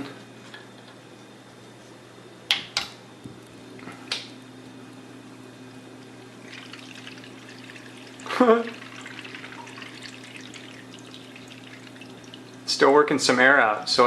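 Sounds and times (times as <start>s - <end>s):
pump humming: 3.8s - 13.1s
water and air gurgling: 6.2s - 12.9s.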